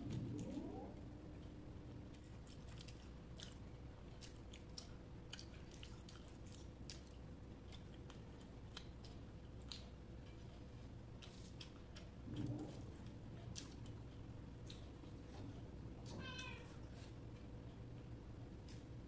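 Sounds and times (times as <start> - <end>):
mouth chewing food: 0.1 - 15.7
wet mouth smacking and clicks: 8.7 - 9.9.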